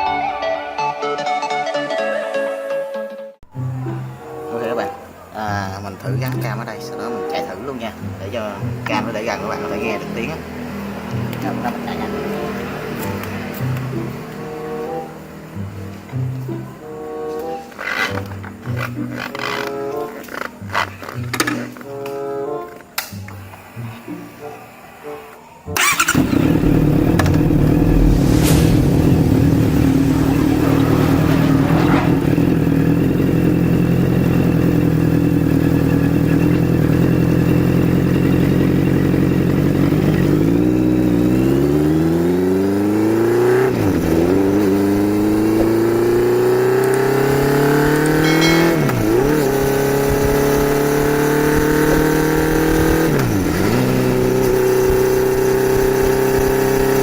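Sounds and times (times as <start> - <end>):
motorcycle engine accelerating: 25.8 - 57.0.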